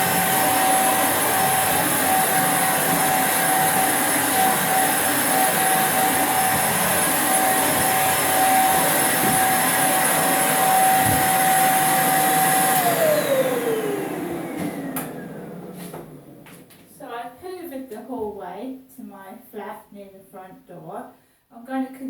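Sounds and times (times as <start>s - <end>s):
vacuum cleaner running: 0.0s - 17.0s.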